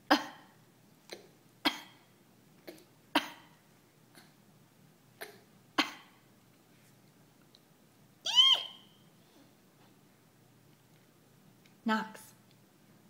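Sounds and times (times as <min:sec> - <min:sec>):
baby coughing: 0:00.1 - 0:03.6, 0:05.2 - 0:06.2.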